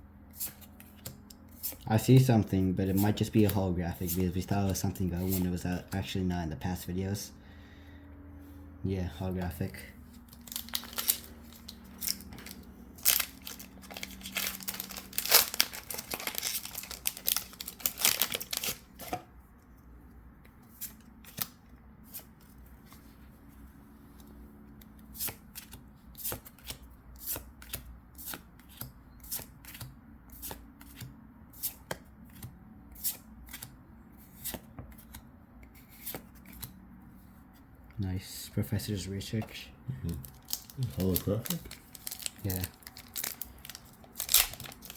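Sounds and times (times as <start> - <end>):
foil wrapper crinkling and tearing: 10.3 - 19.0, 40.2 - 44.9.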